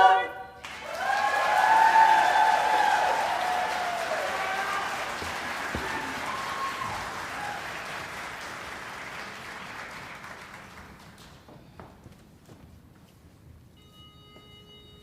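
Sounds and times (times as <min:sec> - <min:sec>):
audience applauding: 0:00.6 - 0:11.4.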